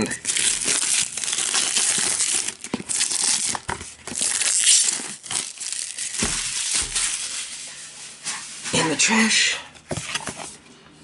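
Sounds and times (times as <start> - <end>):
plastic shrink wrap crinkling: 0.0 - 8.8.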